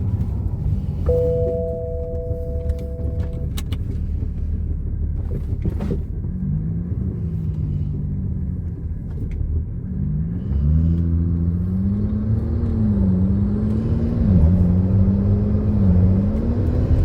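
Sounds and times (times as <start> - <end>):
car engine idling with misfire: 0.0 - 9.7
two-note electronic tone: 1.1 - 3.6.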